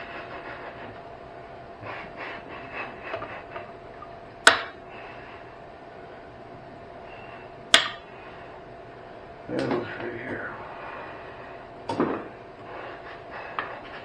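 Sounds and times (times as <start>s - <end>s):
snips cutting wire: 4.4s - 4.8s, 7.7s - 8.0s.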